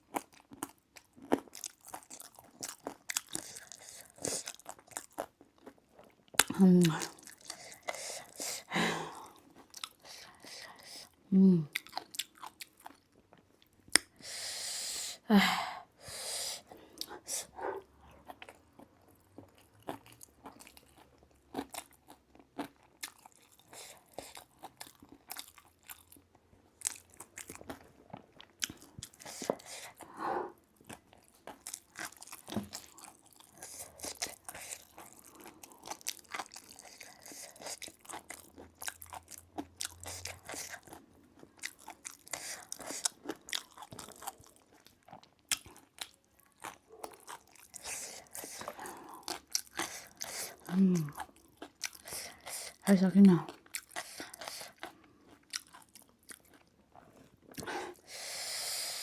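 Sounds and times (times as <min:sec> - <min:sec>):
chewing and crunching food: 0:00.0 - 0:14.3, 0:16.6 - 0:59.0.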